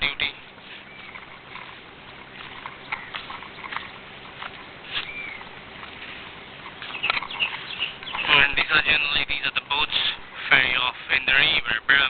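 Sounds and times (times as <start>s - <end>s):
faint low hum: 0.0s - 12.0s
bird chirps and calls: 0.3s - 4.0s, 4.9s - 8.8s.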